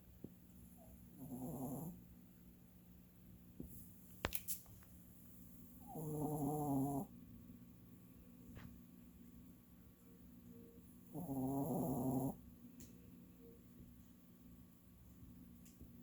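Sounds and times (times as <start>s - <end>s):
dog snoring: 0.8s - 2.0s, 5.8s - 7.1s, 11.1s - 12.4s.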